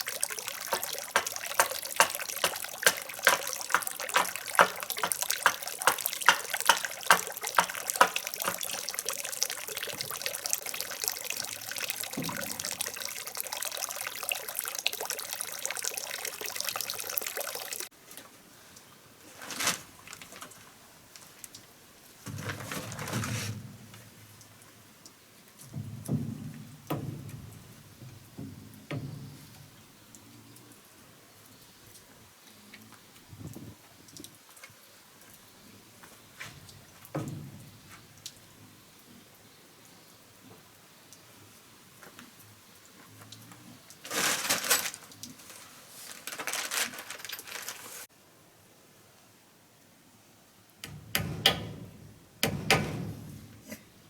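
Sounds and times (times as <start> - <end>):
water trickling and splashing: 0.0 - 19.0, 19.6 - 48.1
handling knocks and rustles: 19.2 - 21.5, 22.1 - 24.3, 44.0 - 48.1.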